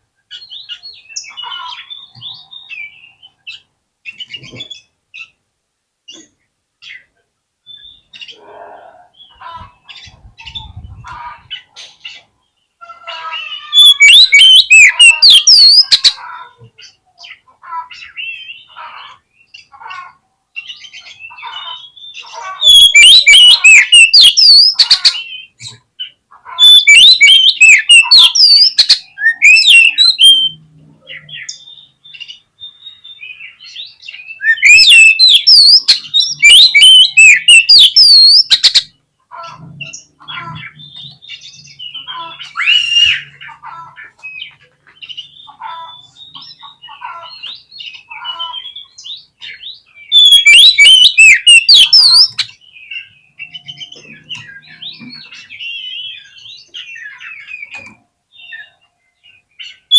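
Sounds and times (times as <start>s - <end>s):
bird singing whistled phrases: 13.6s - 16.1s, 21.7s - 25.6s, 26.6s - 30.6s, 31.2s - 38.9s, 41.8s - 43.3s, 48.3s - 54.8s.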